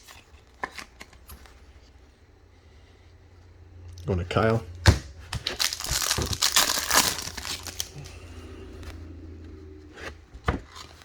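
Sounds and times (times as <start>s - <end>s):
plastic packaging crinkling: 5.4s - 8.0s.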